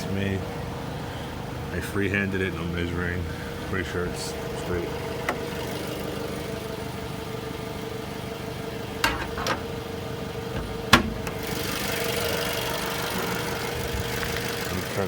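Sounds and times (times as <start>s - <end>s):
car engine idling: 0.0s - 15.0s
sharp knocks: 10.6s - 11.4s.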